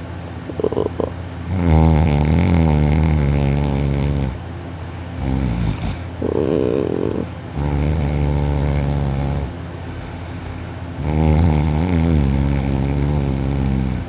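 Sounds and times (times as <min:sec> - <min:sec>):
man snoring loudly: 0:00.5 - 0:04.4, 0:05.2 - 0:14.0.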